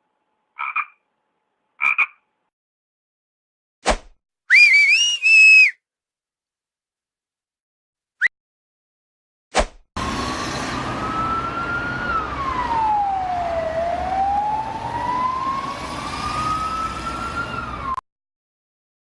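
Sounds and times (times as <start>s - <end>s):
traffic-like rumble: 10.0s - 18.0s
wailing siren: 10.0s - 18.0s.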